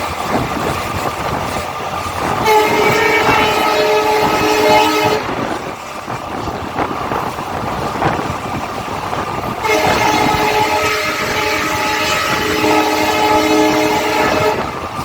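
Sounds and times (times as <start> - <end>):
train rumbling on rails: 0.0 - 15.0
locomotive horn honking: 2.4 - 5.6, 9.6 - 14.8.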